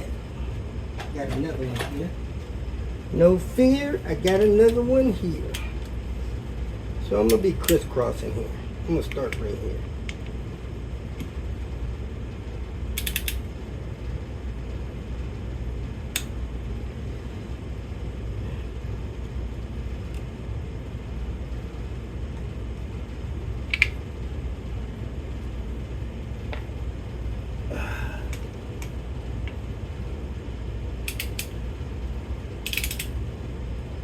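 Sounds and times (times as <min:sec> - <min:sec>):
steady low hum: 0:00.0 - 0:34.0
torque wrench ratcheting: 0:13.0 - 0:13.4, 0:32.6 - 0:33.2.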